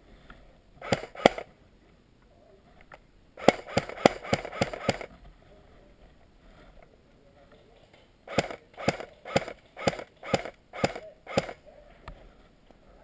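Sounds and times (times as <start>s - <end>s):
airsoft gun shots: 0.8s - 1.5s, 3.4s - 5.1s, 8.3s - 11.6s.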